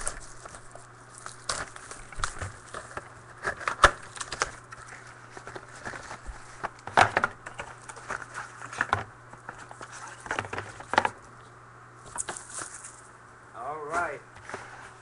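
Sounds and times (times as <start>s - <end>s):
wrappers crinkling: 0.0s - 10.9s
steady low hum: 0.0s - 15.0s.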